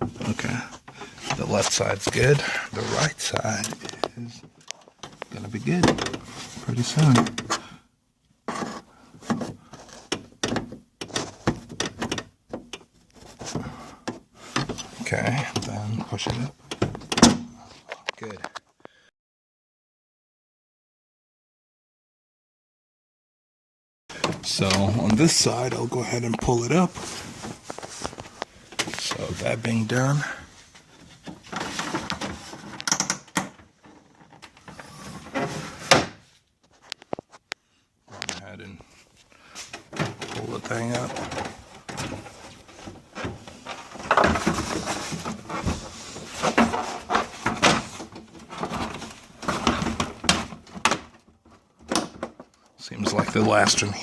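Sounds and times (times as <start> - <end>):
plastic scraping: 0.0 - 7.7, 8.5 - 10.3, 24.1 - 36.1, 39.7 - 54.0.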